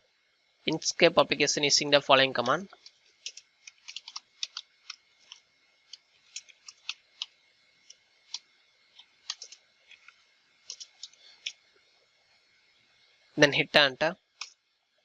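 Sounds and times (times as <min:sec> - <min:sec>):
keyboard typing clicks: 0:03.2 - 0:07.3, 0:09.3 - 0:09.6.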